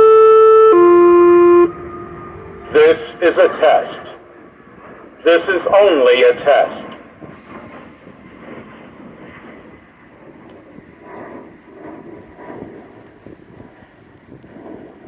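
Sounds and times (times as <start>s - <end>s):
distant jet aircraft rumble: 0.0s - 15.0s
wind on microphone: 7.2s - 15.0s.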